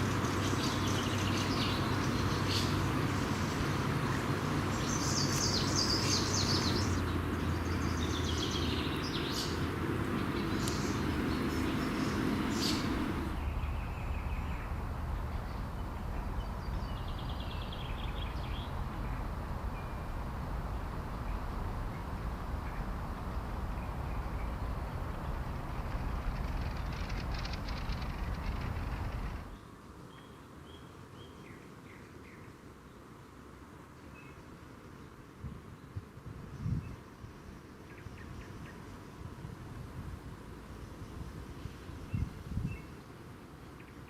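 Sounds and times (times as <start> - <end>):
low outdoor rumble: 0.0 - 29.6
songbirds singing: 0.0 - 33.2, 33.9 - 39.4, 40.6 - 44.0.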